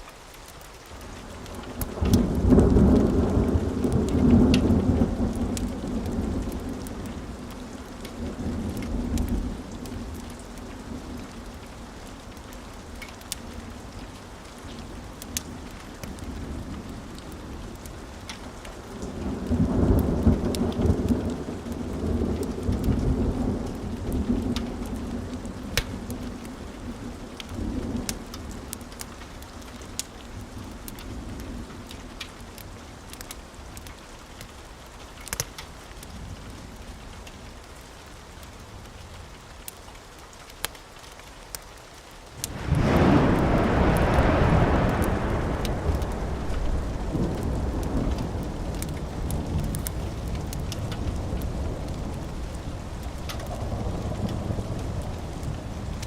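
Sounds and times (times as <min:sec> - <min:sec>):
steady rain: 0:00.0 - 0:56.0
fireplace crackling: 0:42.3 - 0:56.0
rolling thunder: 0:42.4 - 0:56.0.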